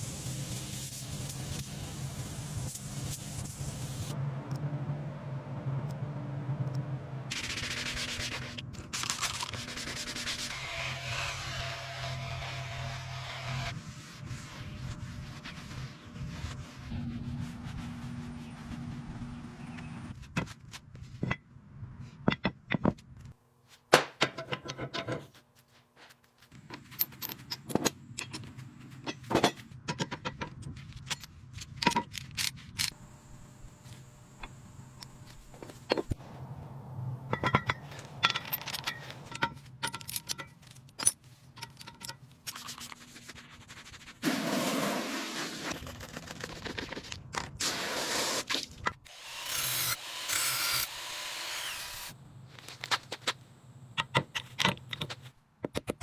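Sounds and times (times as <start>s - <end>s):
rasping sanding noise: 7.3s - 8.7s, 9.4s - 19.7s, 49.3s - 52.2s
tools clicking and clinking: 26.6s - 33.0s, 37.3s - 43.0s, 54.0s - 56.0s.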